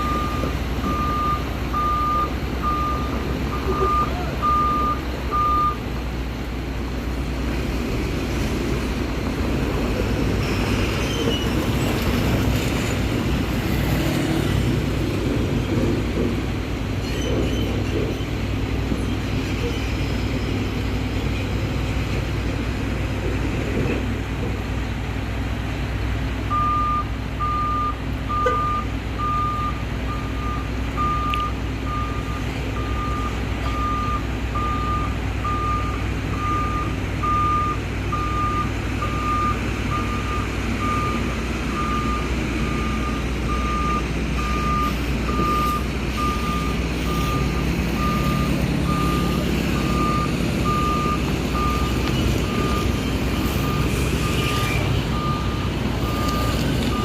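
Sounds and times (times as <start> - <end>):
reversing alarm beeping: 0.0 - 5.9, 26.5 - 57.0
heavy diesel engines running: 0.0 - 57.0.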